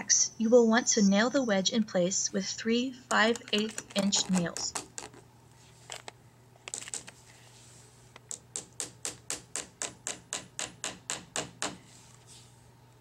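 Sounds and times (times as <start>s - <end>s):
hammer tapping nails into wood: 8.3s - 11.8s.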